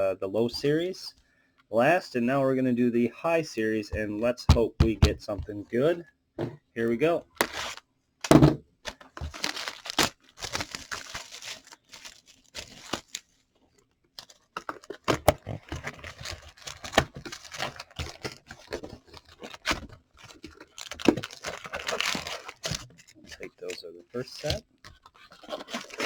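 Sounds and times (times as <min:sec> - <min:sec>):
wrappers tearing and crinkling: 0:07.4 - 0:07.8, 0:08.9 - 0:13.4, 0:14.2 - 0:26.0.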